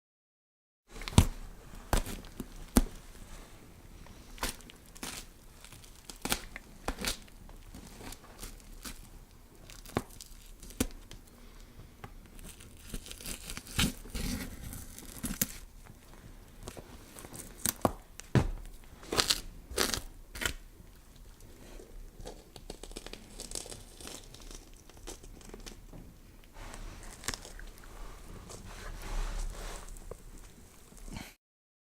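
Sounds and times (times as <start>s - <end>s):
flesh tearing and scraping: 4.3s - 11.2s, 12.3s - 18.0s, 18.7s - 25.9s, 26.8s - 31.1s.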